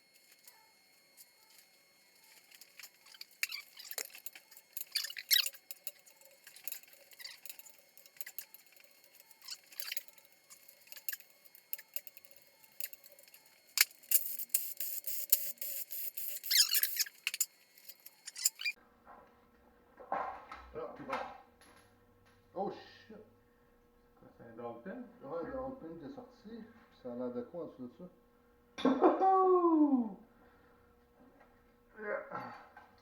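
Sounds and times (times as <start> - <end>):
metal parts clinking and scraping: 1.4 - 18.8.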